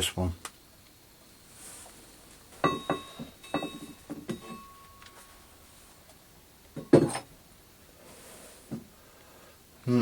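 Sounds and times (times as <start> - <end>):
metallic ring: 2.5 - 5.7.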